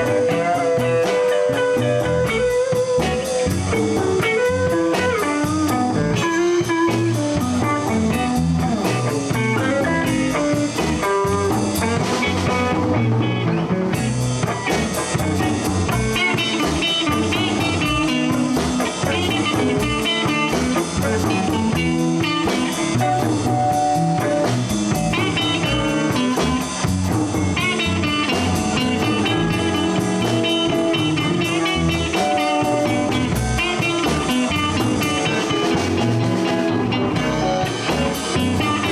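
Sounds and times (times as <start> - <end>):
blues band playing: 0.0 - 38.9
lead guitar lines: 0.0 - 38.9.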